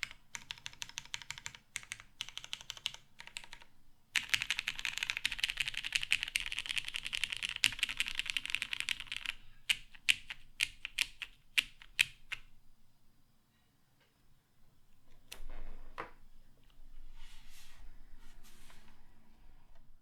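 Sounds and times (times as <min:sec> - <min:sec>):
mechanical keyboard typing: 0:00.0 - 0:12.5.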